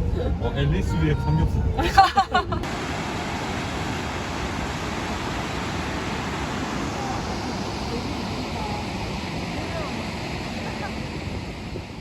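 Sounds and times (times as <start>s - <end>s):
steady rushing noise: 2.5s - 12.0s.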